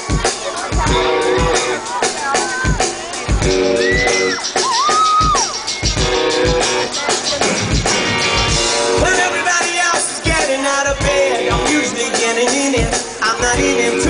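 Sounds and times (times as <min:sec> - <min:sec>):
drum kit beating: 0:00.0 - 0:14.0
high sliding melody line: 0:00.3 - 0:14.0
guitar chords: 0:05.8 - 0:14.0.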